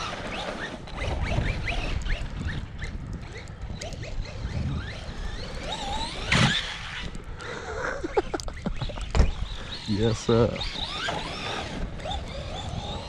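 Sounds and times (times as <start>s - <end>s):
electric motor whining: 0.0s - 13.0s.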